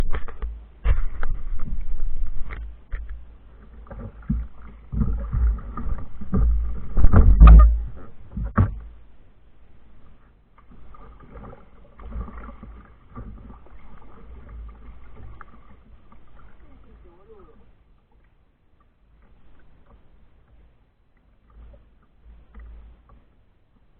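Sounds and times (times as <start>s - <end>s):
low rumbling: 0.0s - 18.2s
water washing: 0.9s - 9.0s, 10.6s - 18.3s
knocks against kayak hull: 4.0s - 9.0s.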